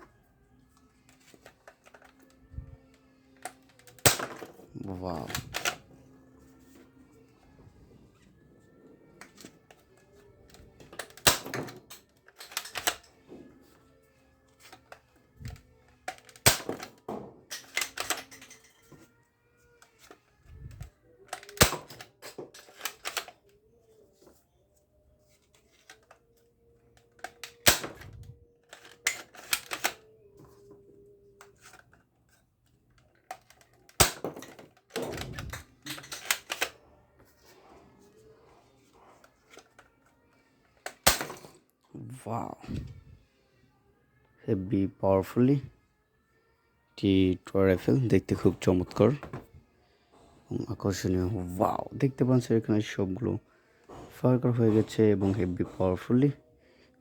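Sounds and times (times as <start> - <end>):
toy gun shots: 3.9 - 5.8, 11.0 - 11.8, 16.2 - 17.0, 21.4 - 22.1, 27.4 - 28.1, 41.0 - 41.5.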